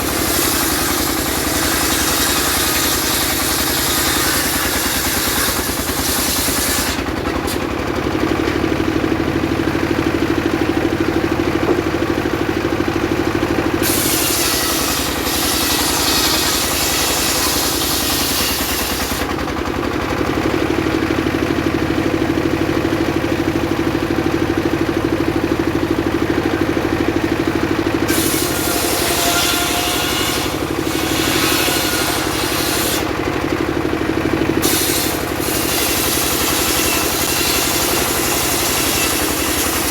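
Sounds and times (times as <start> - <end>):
saw blade cutting wood: 0.0 - 8.5, 13.6 - 19.6, 28.0 - 33.4, 34.5 - 39.9.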